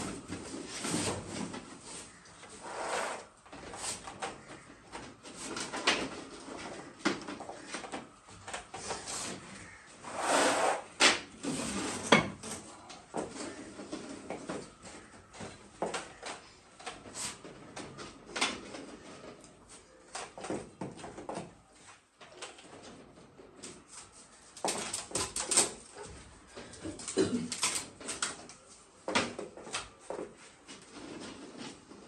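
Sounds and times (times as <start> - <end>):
objects knocking and scraping: 0.0 - 32.0.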